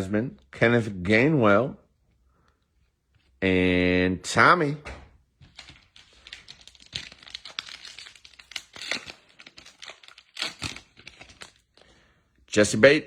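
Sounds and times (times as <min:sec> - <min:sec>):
foil wrapper crinkling and tearing: 0:05.4 - 0:11.9.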